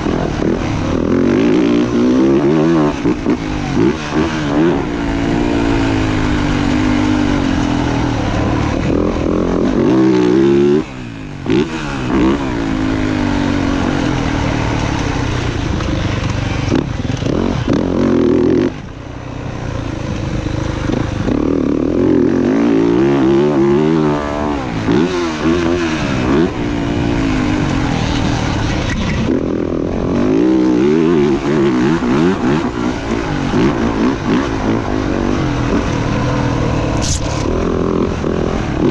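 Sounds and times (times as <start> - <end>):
dirt bike engine revving: 0.0 - 38.9.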